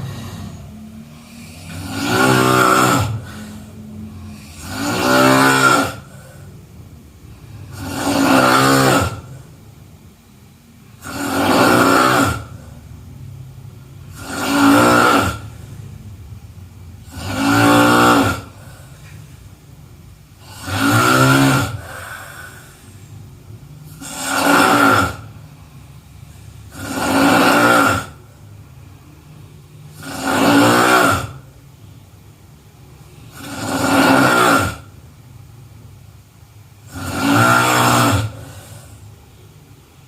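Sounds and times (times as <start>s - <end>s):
person snoring: 0.0s - 9.6s, 10.9s - 13.0s, 14.0s - 15.9s, 17.0s - 19.4s, 20.4s - 28.4s, 29.9s - 31.6s, 33.1s - 35.0s, 36.8s - 39.2s.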